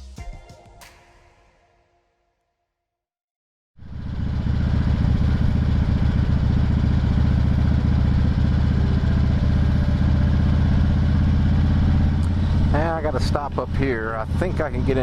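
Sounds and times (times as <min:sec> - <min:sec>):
motorcycle engine running: 0:03.8 - 0:15.0.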